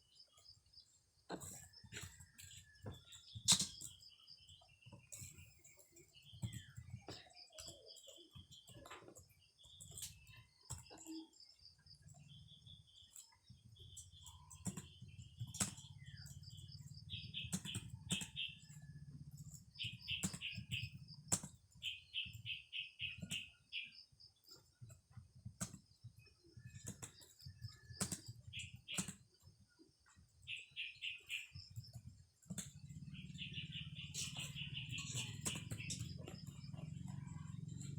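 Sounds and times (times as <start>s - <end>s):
bird chirping trills: 0.0s - 37.9s.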